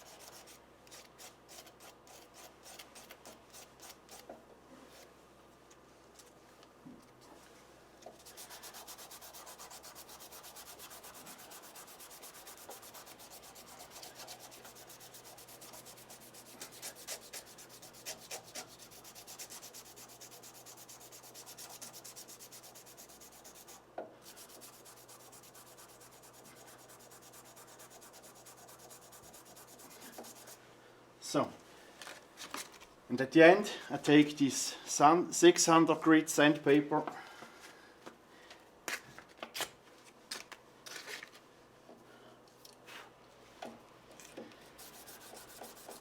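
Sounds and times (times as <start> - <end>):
sandpaper rubbing on plastic: 0.0 - 4.2, 8.2 - 30.6, 44.8 - 46.0.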